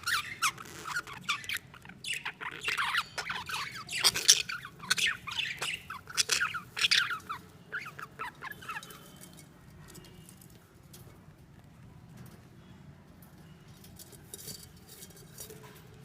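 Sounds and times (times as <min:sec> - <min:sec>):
budgies chirping and squawking: 0:00.0 - 0:09.4.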